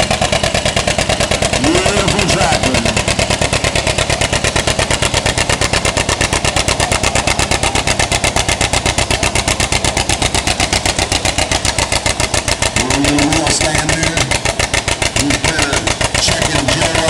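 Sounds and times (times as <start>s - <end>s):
tractor engine popping exhaust: 0.0s - 17.0s.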